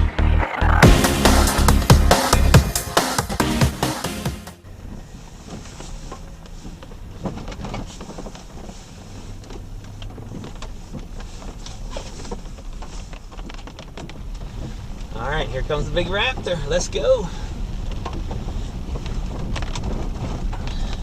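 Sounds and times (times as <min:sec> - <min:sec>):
music: 0:00.0 - 0:04.6
vehicle idling rumble: 0:00.0 - 0:21.0.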